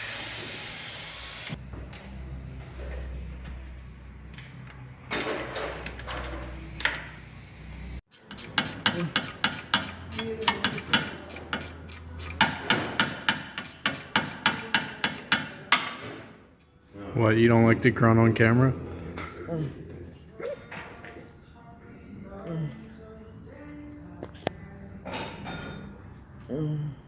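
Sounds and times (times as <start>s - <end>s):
tool rasping against metal: 8.1s - 15.7s.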